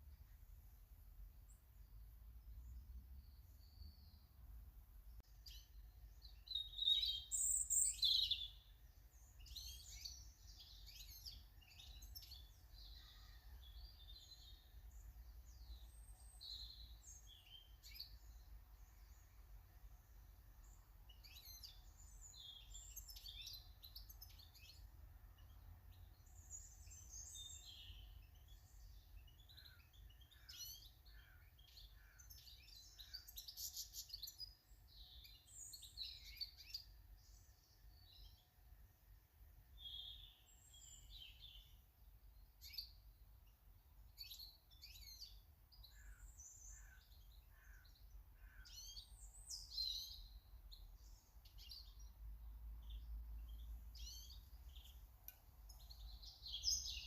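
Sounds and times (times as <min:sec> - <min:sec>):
birds chirping: 0:42.4 - 0:57.0.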